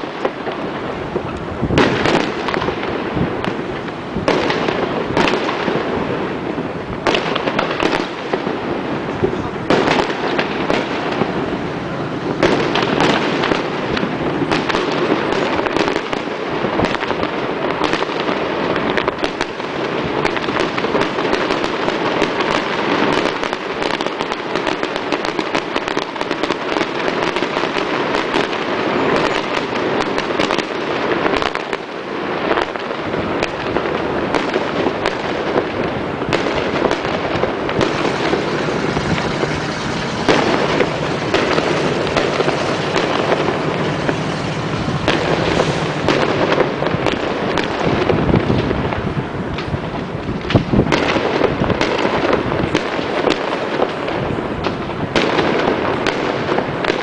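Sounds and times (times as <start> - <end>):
fireworks bangs and crackles: 0.0 - 57.0.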